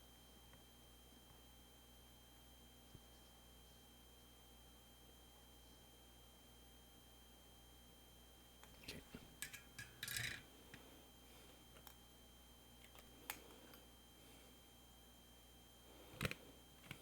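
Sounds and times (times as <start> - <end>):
steady low hum: 0.0 - 17.0
tools clicking and scraping: 9.4 - 10.4.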